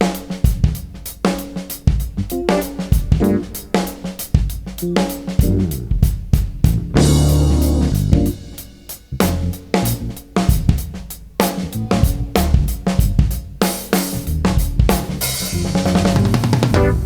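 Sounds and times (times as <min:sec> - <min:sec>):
jazz fusion band playing: 0:01.0 - 0:17.0
loud held band chord: 0:02.3 - 0:04.0, 0:06.8 - 0:09.0.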